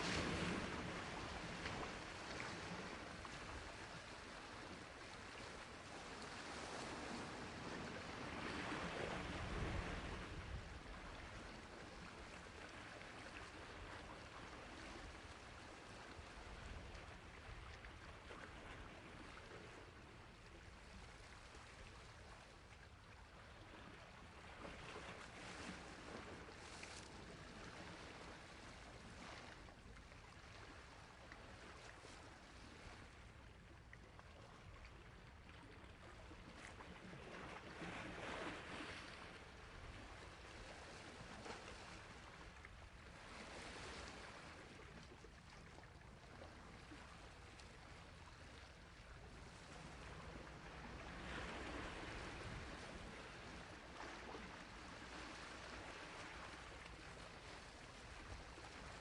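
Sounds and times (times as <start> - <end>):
faint sea waves on shore: 0.0 - 59.0.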